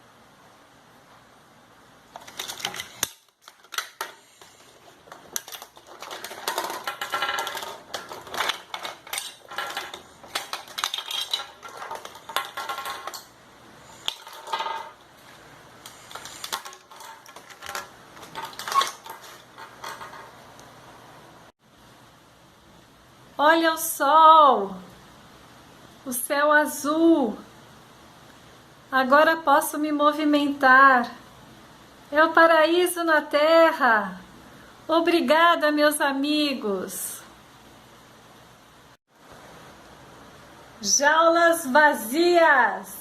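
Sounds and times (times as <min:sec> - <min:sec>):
clatter of clicks and knocks: 0:02.2 - 0:13.3, 0:15.9 - 0:20.4.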